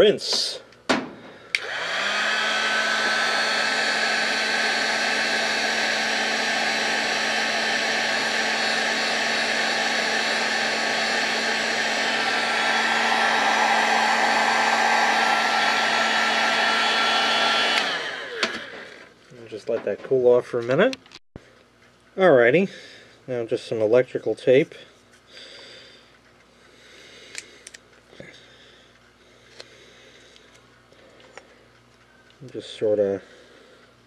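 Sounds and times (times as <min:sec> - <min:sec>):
hot-air blower running: 0:00.0 - 0:20.4.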